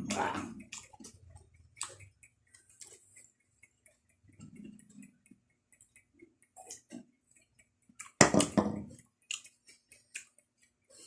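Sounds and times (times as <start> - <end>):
person chewing leafy greens: 0.2 - 3.4, 7.8 - 10.7.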